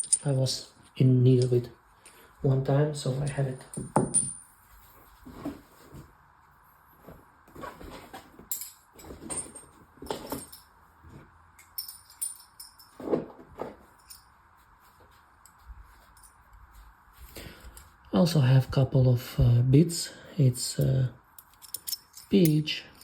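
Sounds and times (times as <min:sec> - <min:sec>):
metal tools clinking: 0:00.0 - 0:00.6, 0:03.0 - 0:04.6, 0:08.5 - 0:10.7, 0:11.6 - 0:13.2, 0:13.9 - 0:14.3, 0:20.8 - 0:23.0.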